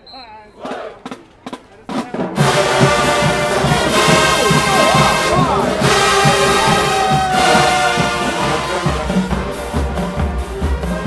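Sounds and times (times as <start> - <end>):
steady drum beat: 0.6 - 11.0
brass horns playing: 2.3 - 11.0
sliding trombone lines: 2.4 - 11.0.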